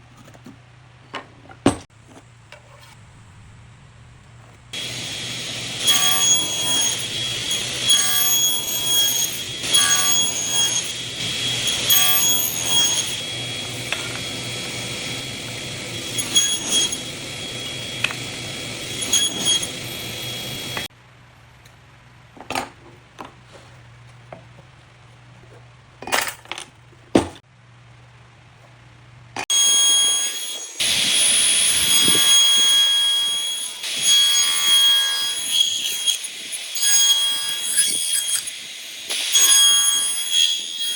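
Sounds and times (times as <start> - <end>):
power tool whining: 4.7 - 20.9, 29.4 - 40.9.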